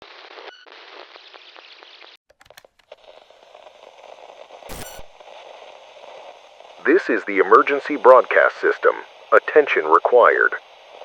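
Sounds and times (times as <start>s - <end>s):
clicks: 2.3s - 2.9s, 4.7s - 5.2s
crackling radio static: 2.9s - 11.0s
harsh buzzing glitch: 4.7s - 5.2s.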